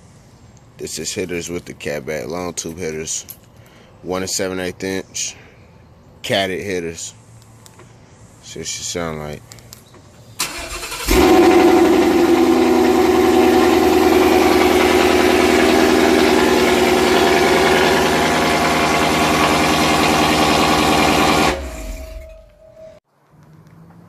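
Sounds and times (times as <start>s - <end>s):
car engine starting and idling: 10.4s - 22.9s.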